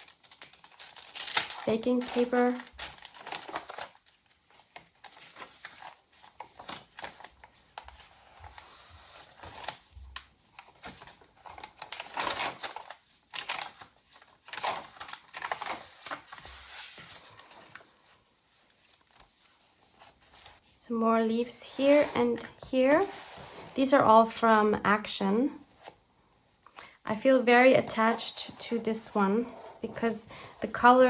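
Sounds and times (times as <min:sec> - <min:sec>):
paper pages rustling: 0:00.0 - 0:20.8.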